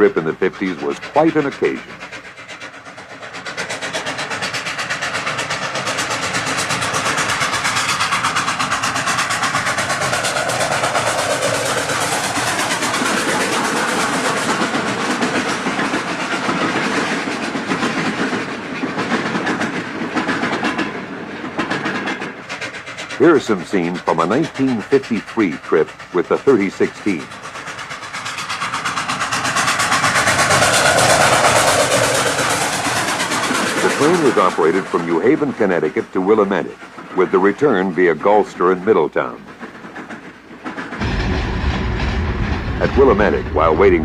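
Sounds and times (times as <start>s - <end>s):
train running past: 0.0s - 44.0s.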